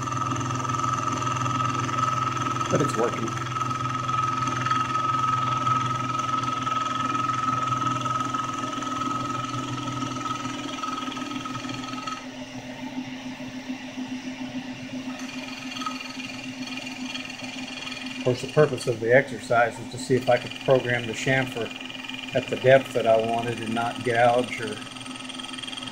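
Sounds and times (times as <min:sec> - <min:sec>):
low machine hum: 0:00.0 - 0:25.9
milling machine whine: 0:00.0 - 0:25.9.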